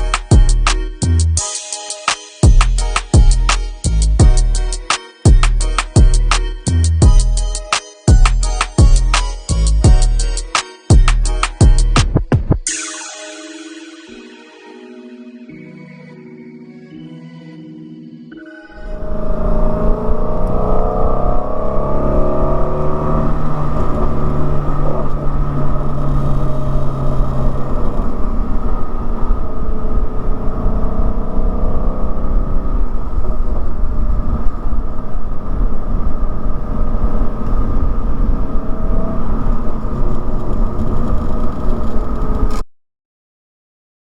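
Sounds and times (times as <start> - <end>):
car engine accelerating: 18.7 - 42.6.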